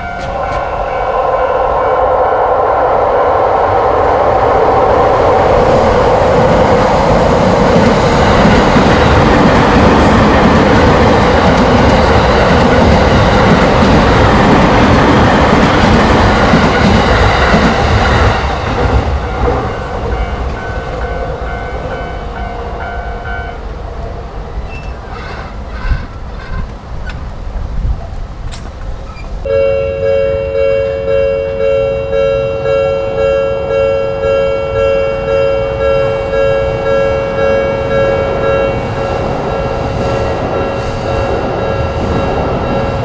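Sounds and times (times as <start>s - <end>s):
train wheels rushing on rails: 0.0s - 29.5s, 35.8s - 43.0s
level crossing warning alarm: 29.5s - 43.0s.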